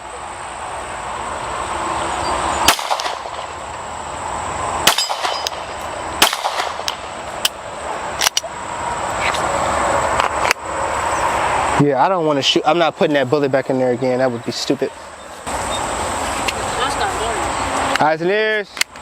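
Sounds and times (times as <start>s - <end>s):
sharp metallic clangs: 4.8s - 7.6s.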